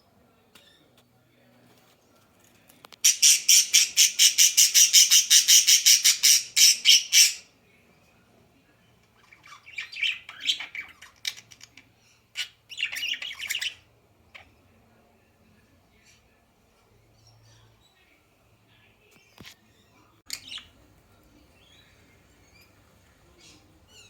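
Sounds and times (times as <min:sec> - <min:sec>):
bird chirping: 0:03.0 - 0:07.5, 0:09.2 - 0:14.6, 0:19.1 - 0:24.0.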